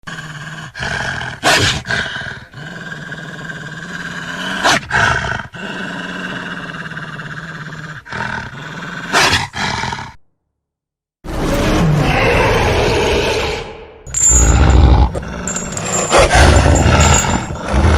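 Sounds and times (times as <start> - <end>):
wolf growling: 14.2 - 17.9.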